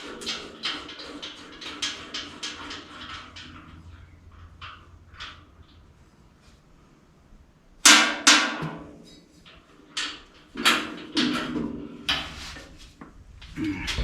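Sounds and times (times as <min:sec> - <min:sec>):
metal knocks and clanks: 0:00.0 - 0:06.9.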